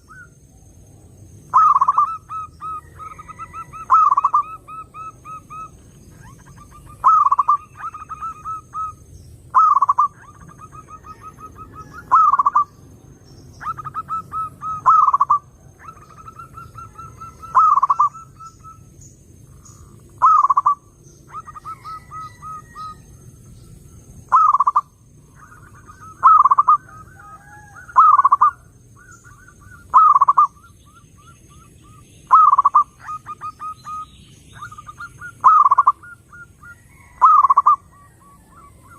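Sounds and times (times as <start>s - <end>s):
dove cooing: 0.0s - 18.9s, 19.5s - 38.9s.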